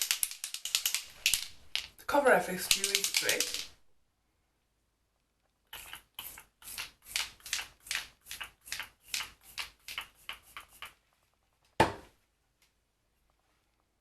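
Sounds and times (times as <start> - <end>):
spray bottle pumping mist: 5.7 - 11.0.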